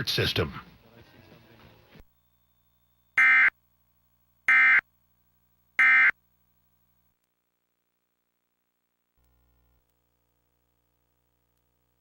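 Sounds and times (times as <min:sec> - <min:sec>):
digital data tone bursts: 0:03.2 - 0:03.5, 0:05.8 - 0:06.1.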